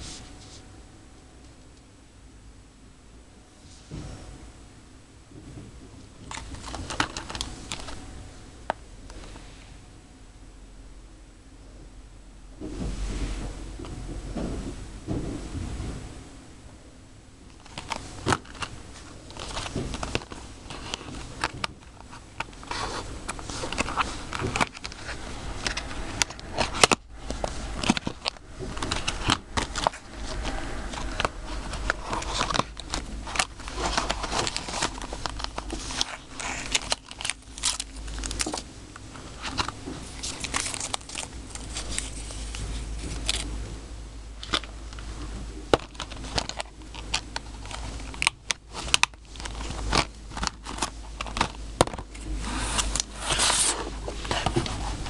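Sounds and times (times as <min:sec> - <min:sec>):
plastic wrappers crinkling: 0:06.2 - 0:08.0, 0:17.5 - 0:43.6, 0:44.4 - 0:55.0.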